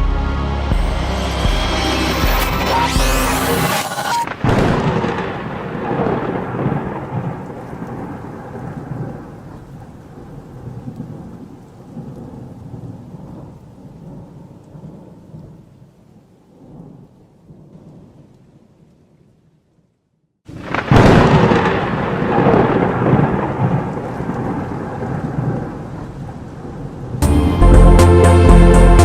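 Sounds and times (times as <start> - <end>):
rain: 0.0 - 27.6
thunder crash and rumble: 4.2 - 9.2, 20.5 - 25.9.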